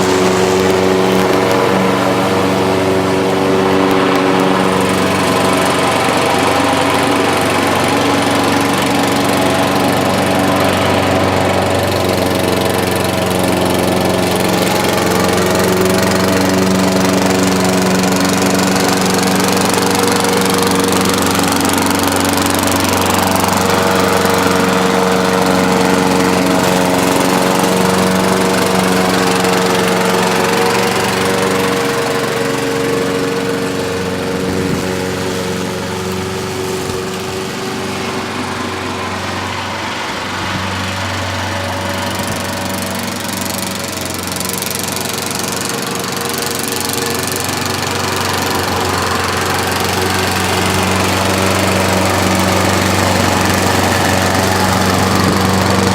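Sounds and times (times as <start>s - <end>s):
lawn mower engine running: 0.0s - 55.9s.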